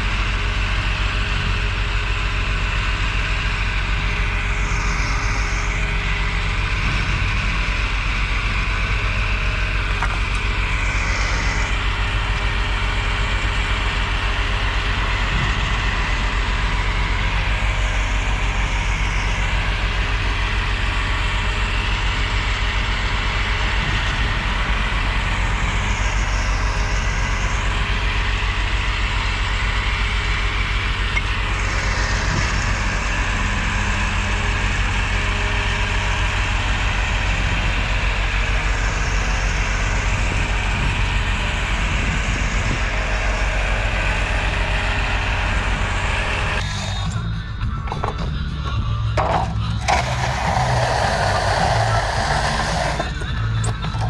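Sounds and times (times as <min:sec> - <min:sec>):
diesel truck engine humming: 0:49.0 - 0:54.0.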